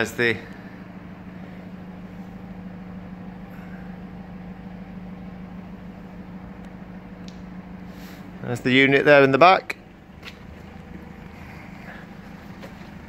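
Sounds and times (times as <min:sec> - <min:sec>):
van engine mechanical hum: 0:00.0 - 0:13.0.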